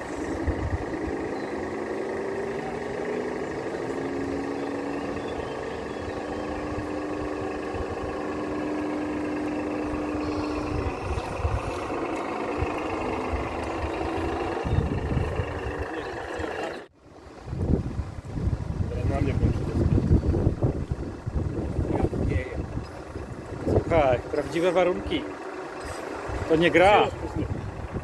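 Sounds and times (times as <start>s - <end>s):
wind buffeting microphone: 0.0s - 16.8s, 17.4s - 28.0s
model machine motor whining: 0.0s - 16.9s, 19.2s - 28.0s.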